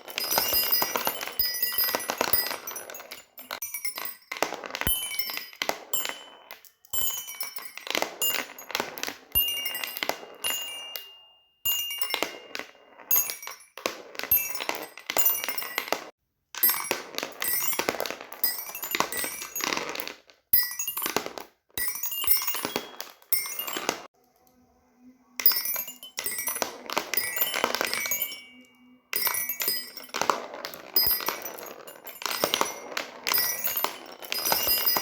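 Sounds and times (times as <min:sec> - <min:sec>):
fidget toys clicking and clinking: 0:00.0 - 0:24.6, 0:25.4 - 0:35.0.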